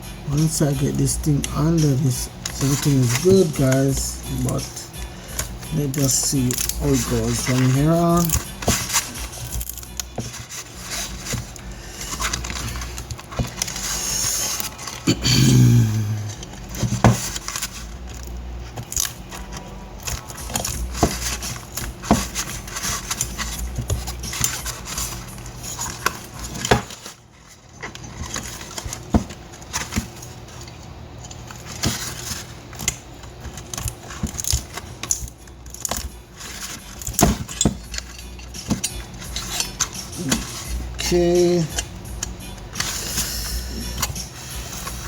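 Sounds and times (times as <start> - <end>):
steady low hum: 0.0 - 45.0
metal tools clinking and scraping: 0.3 - 15.0, 33.6 - 45.0.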